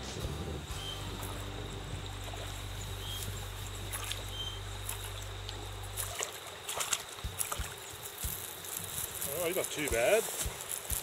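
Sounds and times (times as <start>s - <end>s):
low hum: 0.0s - 7.7s.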